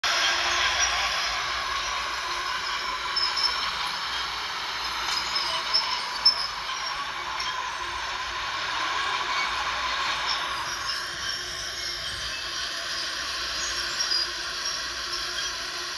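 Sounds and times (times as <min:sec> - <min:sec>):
bulldozer engine and tracks: 0:00.0 - 0:15.9
high squeaks: 0:00.1 - 0:08.3.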